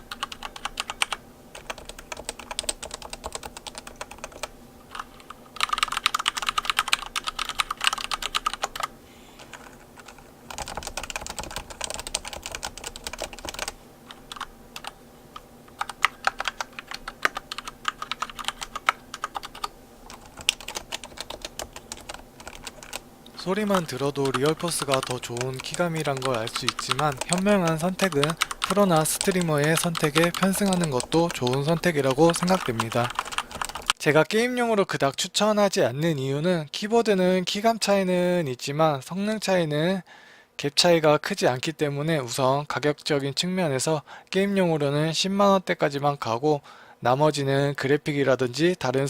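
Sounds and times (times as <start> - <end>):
rapid typing on keyboard: 0.0 - 15.0, 15.7 - 34.0.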